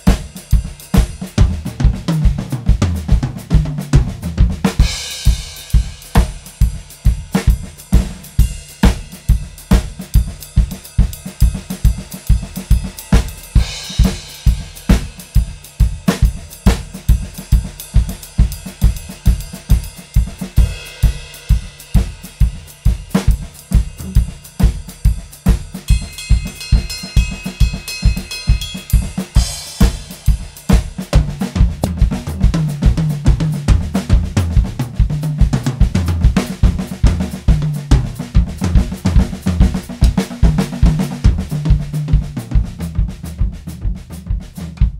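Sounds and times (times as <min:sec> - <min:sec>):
bass drum and snare: 0:00.0 - 0:44.9
cymbal crashes: 0:20.6 - 0:31.0.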